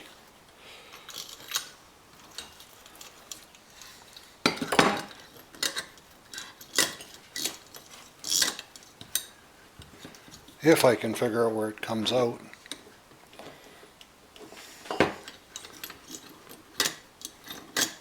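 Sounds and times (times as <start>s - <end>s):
metal parts clinking and knocking: 1.0s - 3.8s, 4.5s - 9.3s, 14.9s - 18.0s.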